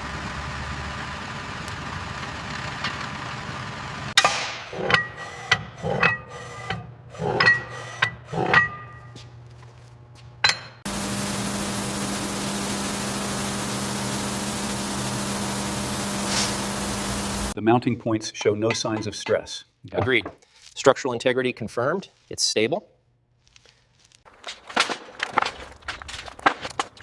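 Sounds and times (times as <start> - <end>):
machine hum: 0.0 - 17.6.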